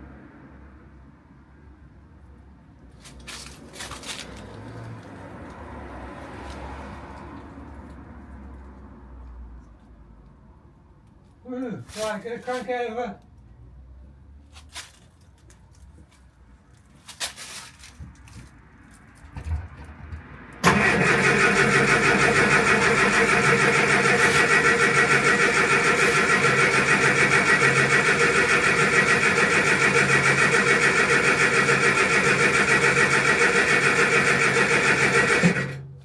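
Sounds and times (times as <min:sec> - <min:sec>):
engine cranking on starter motor: 0:20.6 - 0:36.0.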